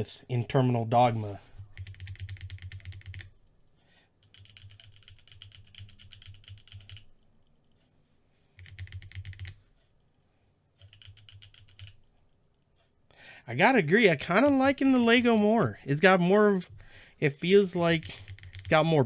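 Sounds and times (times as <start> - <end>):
mechanical keyboard typing: 1.8 - 3.3, 4.2 - 7.2, 8.6 - 9.6, 10.8 - 12.1, 18.0 - 18.8.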